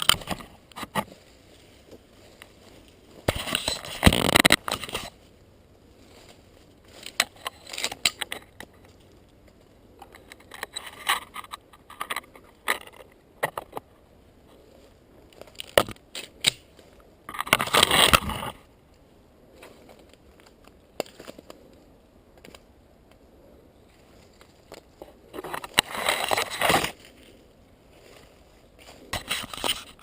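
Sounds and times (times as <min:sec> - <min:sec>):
crunching rustling and clinking: 0:00.0 - 0:05.3, 0:06.0 - 0:13.9, 0:23.9 - 0:30.0.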